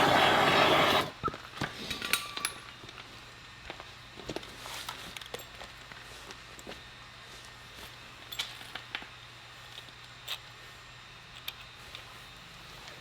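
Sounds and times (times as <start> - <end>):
power tool running: 0.0 - 1.2.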